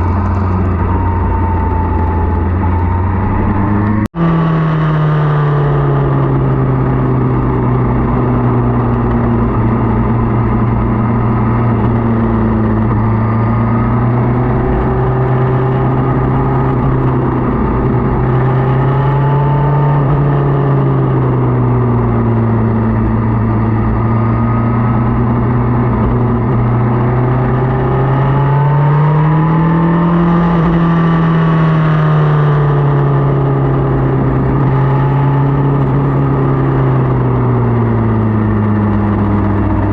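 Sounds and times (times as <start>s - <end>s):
steady rushing noise: 0.0s - 4.1s
motorcycle engine running: 0.0s - 39.9s.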